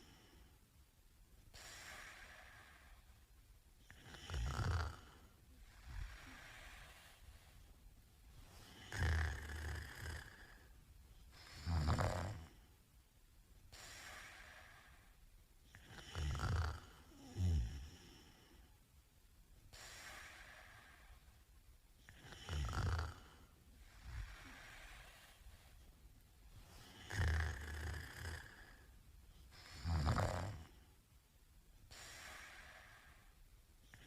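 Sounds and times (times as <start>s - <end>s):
man snoring loudly: 3.9s - 5.2s, 8.7s - 10.6s, 11.6s - 12.6s, 15.8s - 18.1s, 22.1s - 23.4s, 27.0s - 28.8s, 29.7s - 30.7s
airy breaths: 5.2s - 7.7s, 23.1s - 26.0s, 31.9s - 33.4s.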